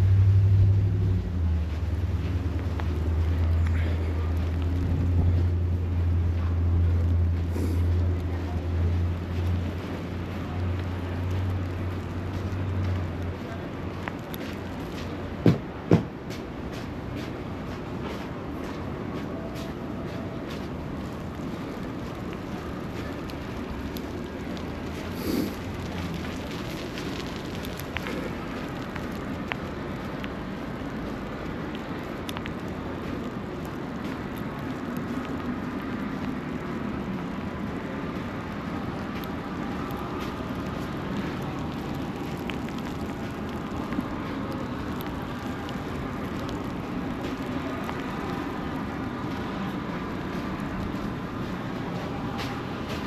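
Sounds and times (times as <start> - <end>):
traffic noise: 0.0 - 53.0
small clicks and crackles: 1.7 - 15.4, 16.4 - 53.0.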